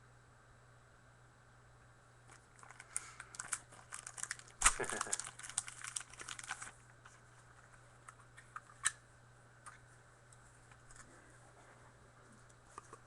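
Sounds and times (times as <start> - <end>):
cards and plastic sleeves rustling: 2.3 - 8.9.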